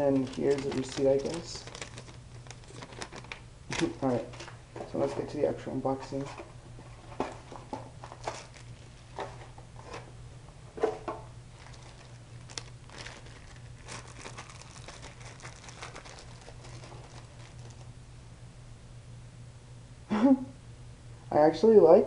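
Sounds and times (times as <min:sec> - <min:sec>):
packaging crinkling: 0:00.0 - 0:04.6, 0:07.1 - 0:10.0, 0:11.5 - 0:18.0
steady low hum: 0:00.0 - 0:22.0.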